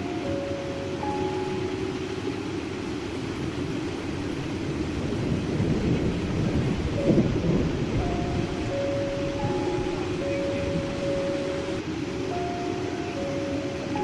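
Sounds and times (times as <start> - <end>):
heavy rain hissing: 0.0 - 14.0
thunder rolling: 3.1 - 12.6.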